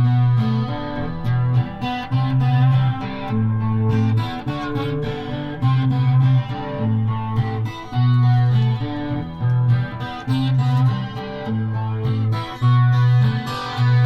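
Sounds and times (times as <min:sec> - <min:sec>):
guitar: 0:00.0 - 0:14.0
repeating bass line: 0:00.0 - 0:14.0.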